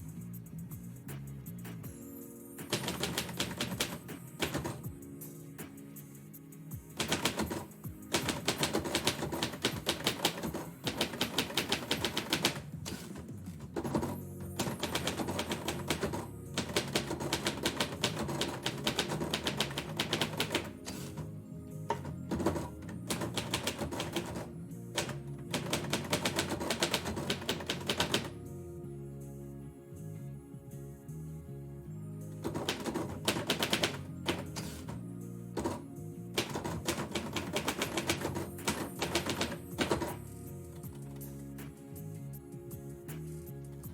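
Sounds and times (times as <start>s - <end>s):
background music: 0.0s - 43.9s
typewriter keys striking: 2.6s - 4.9s, 6.9s - 21.3s, 21.9s - 28.4s, 32.4s - 35.0s, 35.6s - 35.8s, 36.4s - 41.3s.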